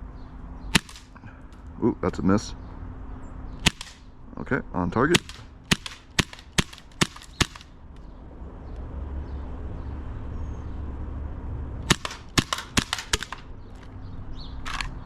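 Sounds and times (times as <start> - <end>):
airsoft pistol shots: 0.7 - 1.2, 3.6 - 4.1, 5.1 - 7.7, 11.8 - 13.5.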